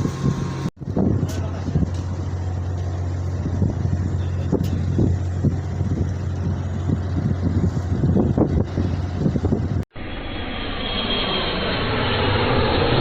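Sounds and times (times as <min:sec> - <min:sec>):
wind buffeting microphone: 0:00.0 - 0:09.8
low engine drone: 0:00.0 - 0:13.0.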